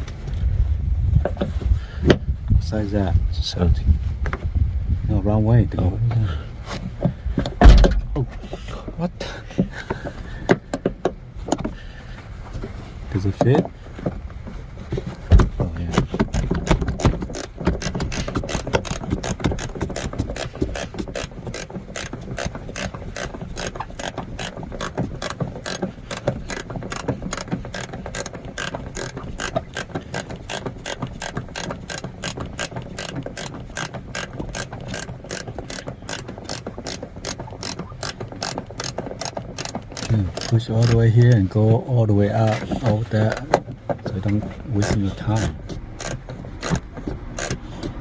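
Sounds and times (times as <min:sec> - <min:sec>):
ratchet wrench clicking: 0:15.9 - 0:41.5, 0:44.8 - 0:48.0.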